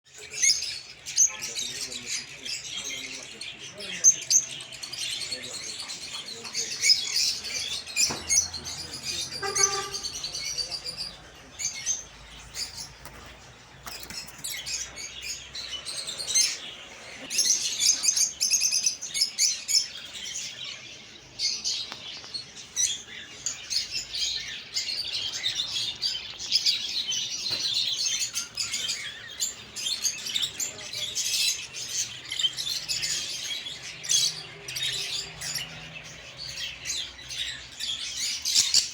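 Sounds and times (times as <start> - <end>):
cage birds chirping and twittering: 0.0 - 38.9
low bird call: 9.1 - 10.7.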